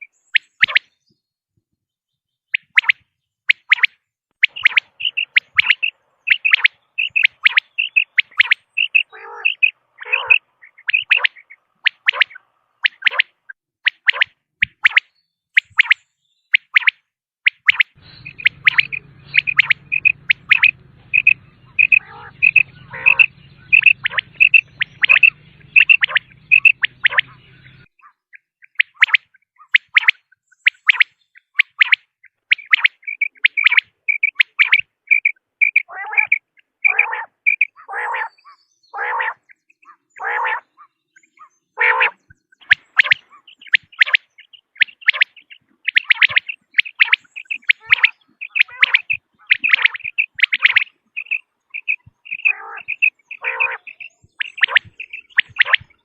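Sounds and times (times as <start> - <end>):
quail calling: 2.5 - 15.0, 16.6 - 56.0
faint low hum: 18.0 - 27.9.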